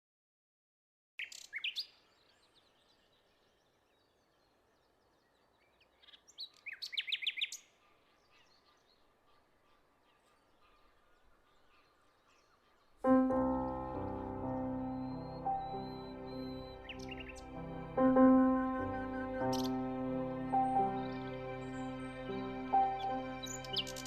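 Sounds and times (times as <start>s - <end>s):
bird chirping: 1.2s - 24.0s
music with sustained tones: 13.1s - 24.0s.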